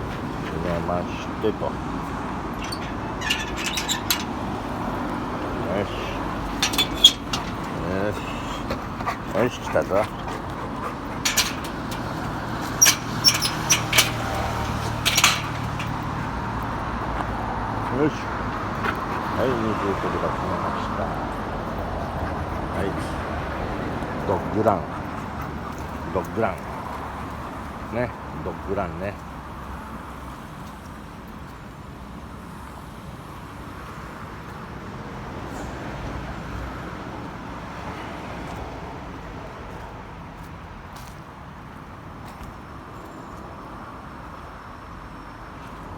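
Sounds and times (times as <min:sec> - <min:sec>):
road traffic noise: 0:00.0 - 0:45.9
metal gate latch clicking: 0:02.5 - 0:16.4.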